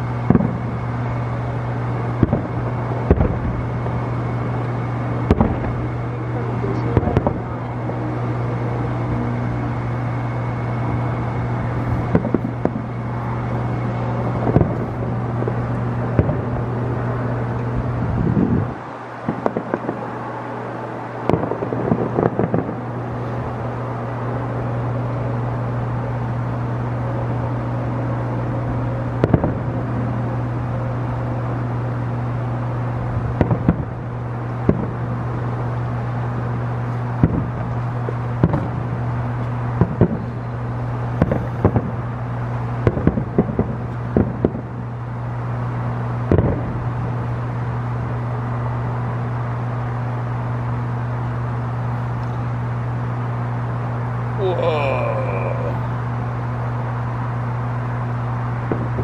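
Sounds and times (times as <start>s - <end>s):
distant fireworks bangs: 0.0s - 23.7s, 29.0s - 30.6s, 33.0s - 48.2s, 58.6s - 59.0s
steady low hum: 0.0s - 59.0s.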